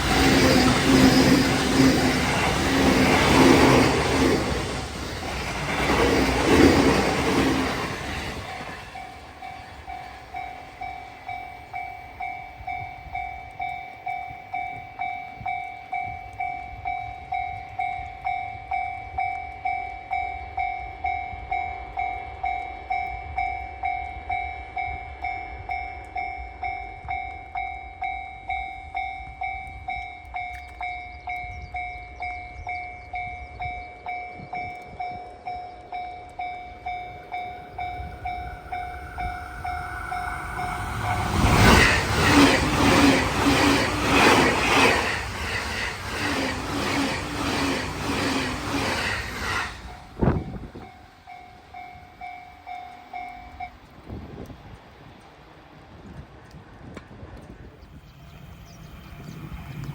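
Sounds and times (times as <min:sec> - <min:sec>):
low rumble: 0:37.3 - 0:44.1.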